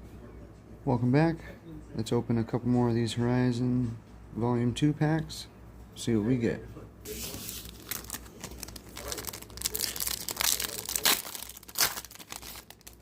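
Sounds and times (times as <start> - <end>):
wrapper crinkling and tearing: 7.1 - 13.0.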